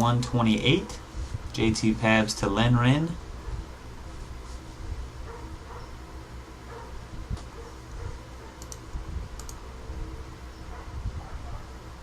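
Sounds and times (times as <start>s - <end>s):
steady low hum: 0.0s - 12.0s
computer mouse clicks: 8.6s - 9.6s.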